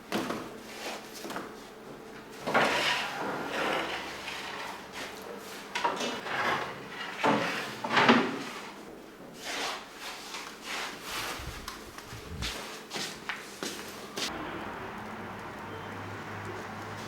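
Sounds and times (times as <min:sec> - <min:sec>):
wooden boards scraping on wood: 0:06.2 - 0:08.8.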